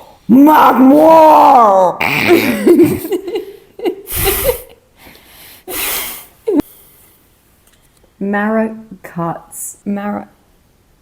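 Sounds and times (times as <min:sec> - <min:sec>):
stifled laughter: 0:02.1 - 0:04.8.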